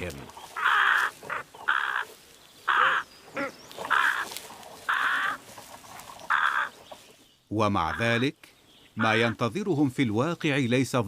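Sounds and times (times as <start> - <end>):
crows cawing: 0.4 - 6.8, 9.0 - 9.4
soft crow call: 0.6 - 5.4, 6.3 - 6.7.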